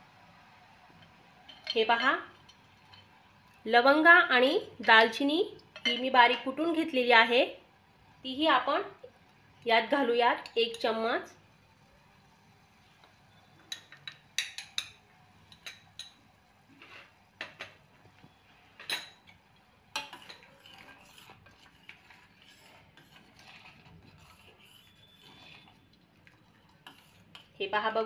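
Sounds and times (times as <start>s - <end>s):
spoon scraping around pot: 13.4s - 17.2s, 18.8s - 27.6s.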